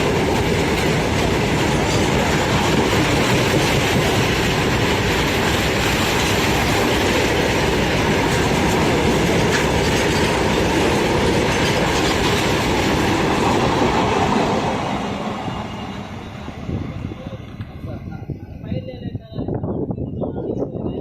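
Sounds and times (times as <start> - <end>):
train wheels on rails: 0.0 - 18.2.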